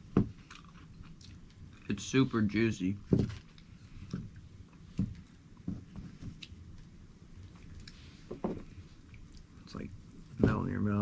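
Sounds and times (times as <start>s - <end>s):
person chewing: 0.4s - 1.6s.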